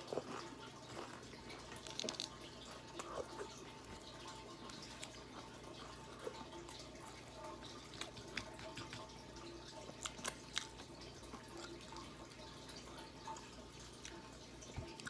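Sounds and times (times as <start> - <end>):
person chewing crunchy chips: 0.0 - 7.0, 9.8 - 12.2
faint steady hum: 0.0 - 15.0
wet mouth clicks: 8.0 - 9.1.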